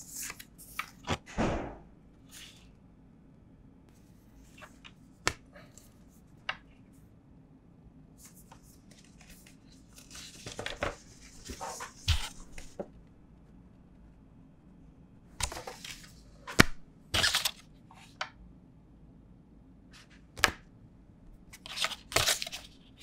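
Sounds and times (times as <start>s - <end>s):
loud knock: 1.3s - 1.9s.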